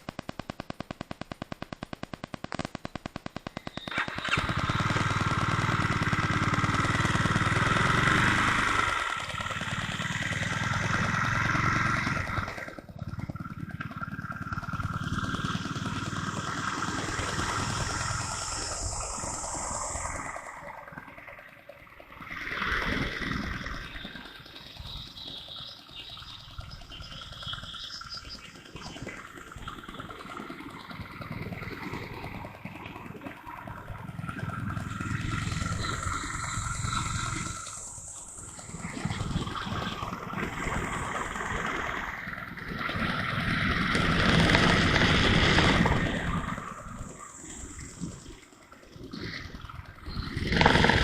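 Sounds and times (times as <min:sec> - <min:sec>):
muffled motorcycle engine: 0:00.0 - 0:51.0
rushing air: 0:16.5 - 0:21.3
wind rushing over microphone: 0:34.9 - 0:48.2.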